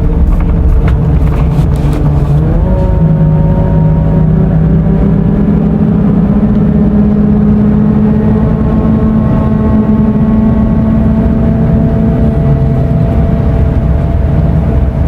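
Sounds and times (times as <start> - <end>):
diesel coach engine rumbling: 0.0 - 15.0.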